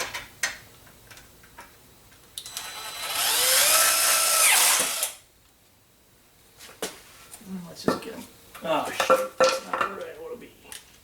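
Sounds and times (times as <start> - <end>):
impact driver whine: 2.4 - 5.2.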